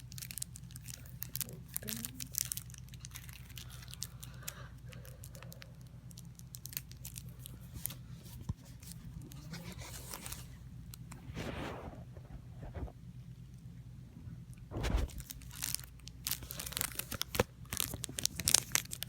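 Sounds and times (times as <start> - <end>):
shrink-wrap tearing: 0.0 - 4.4, 14.7 - 19.0
plastic shrink-wrap crinkling: 0.0 - 11.1, 14.7 - 19.0.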